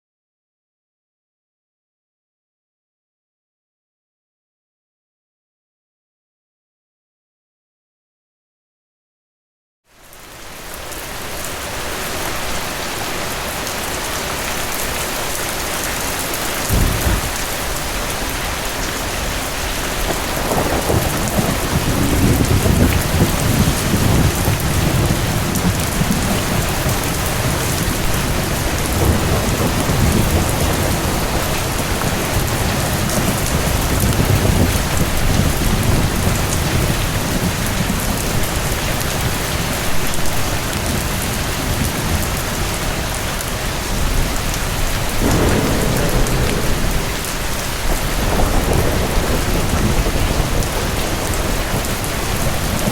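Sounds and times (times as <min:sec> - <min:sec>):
heavy rain: 0:09.9 - 0:52.9
thunder: 0:15.9 - 0:39.4, 0:44.0 - 0:52.9.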